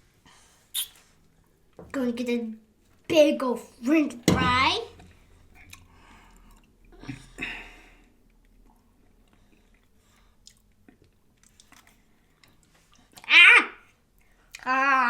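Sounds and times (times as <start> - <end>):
person chewing food: 8.2 - 13.3.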